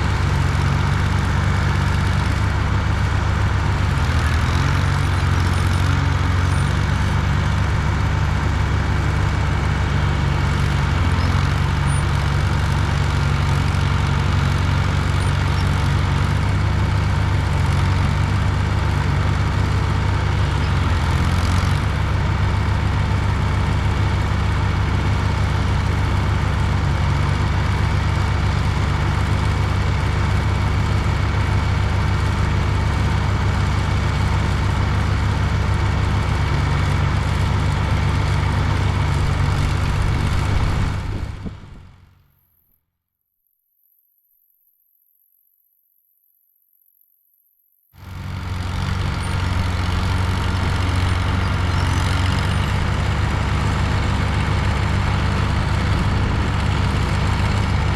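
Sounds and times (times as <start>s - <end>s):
dump truck engine running: 0.0s - 42.2s, 48.0s - 57.9s.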